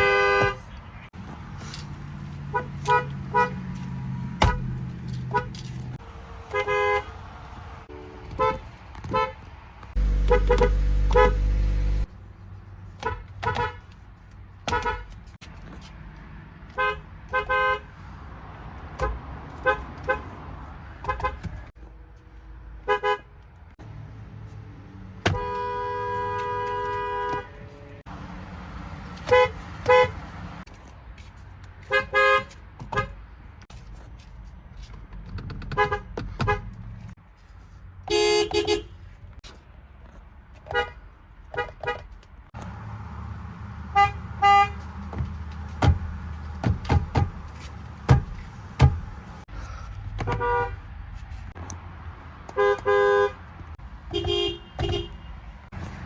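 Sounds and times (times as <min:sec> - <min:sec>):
car horns tooting: 0:00.0 - 0:00.8, 0:02.5 - 0:03.7, 0:04.4 - 0:07.2, 0:07.8 - 0:09.4, 0:10.0 - 0:12.1, 0:13.0 - 0:13.9, 0:14.6 - 0:15.2, 0:16.8 - 0:17.9, 0:22.8 - 0:23.3, 0:25.2 - 0:28.0, 0:29.2 - 0:30.2, 0:31.8 - 0:33.2, 0:35.7 - 0:36.7, 0:38.1 - 0:39.0, 0:43.8 - 0:45.1, 0:50.2 - 0:50.8, 0:52.5 - 0:53.5, 0:54.1 - 0:55.4.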